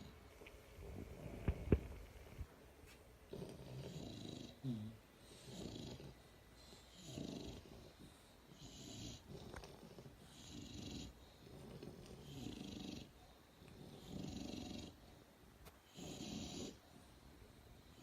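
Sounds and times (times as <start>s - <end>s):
dog snoring: 3.3s - 15.1s, 15.8s - 16.8s.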